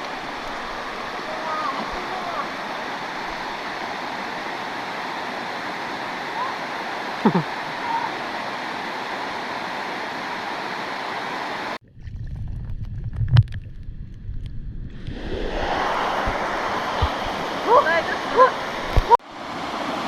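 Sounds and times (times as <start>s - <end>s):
stream rushing: 0.0s - 11.8s, 15.0s - 20.0s
muffled low rumble: 12.1s - 19.1s.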